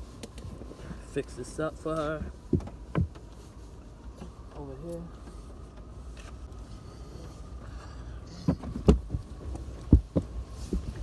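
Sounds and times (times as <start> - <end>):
low steady rumble: 0.0 - 11.0
dull thumps and knocks: 2.2 - 3.4, 8.4 - 11.0.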